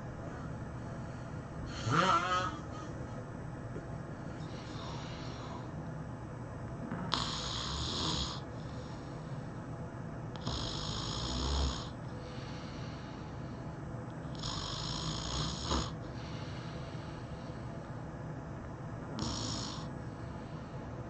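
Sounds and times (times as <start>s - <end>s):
person snoring heavily: 1.7s - 2.9s, 4.4s - 5.7s, 7.0s - 9.0s, 10.4s - 12.0s, 14.3s - 16.3s, 19.2s - 19.9s.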